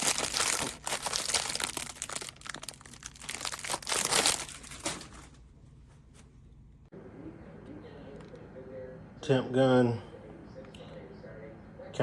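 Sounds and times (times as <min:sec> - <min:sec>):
plastic wrapping crinkling: 0:00.0 - 0:05.3.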